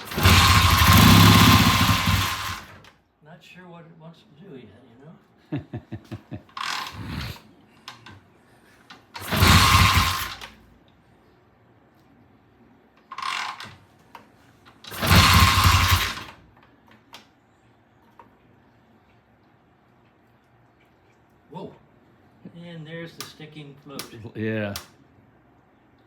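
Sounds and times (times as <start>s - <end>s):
motorcycle engine revving: 0.0s - 2.8s, 6.6s - 7.4s, 9.2s - 10.5s, 14.9s - 16.4s.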